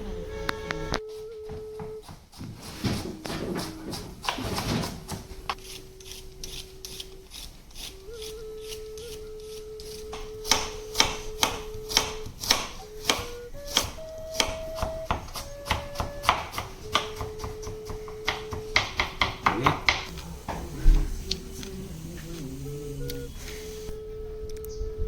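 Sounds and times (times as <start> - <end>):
held tone changing pitch: 0.0 - 2.0, 20.1 - 25.0
knife chopping on cutting board: 1.4 - 9.1, 9.9 - 21.1.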